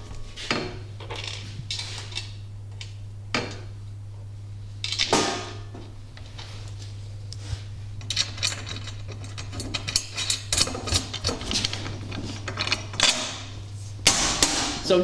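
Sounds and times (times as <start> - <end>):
steady low hum: 0.0 - 15.0
metal tools clicking and clattering: 0.5 - 2.3, 8.0 - 15.0.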